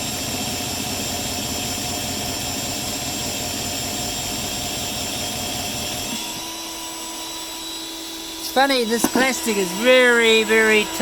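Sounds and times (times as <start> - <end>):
lathe boring plastic: 0.0 - 11.0
steady hum: 2.4 - 11.0.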